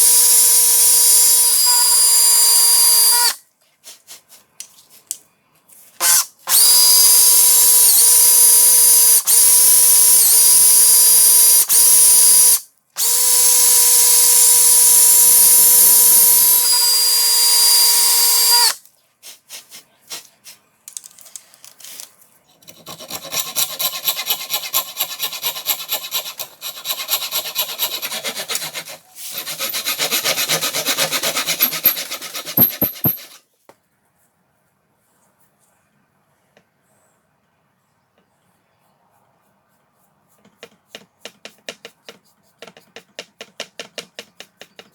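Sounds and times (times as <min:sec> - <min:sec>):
small power tool whining: 0:00.0 - 0:03.4, 0:06.0 - 0:18.8.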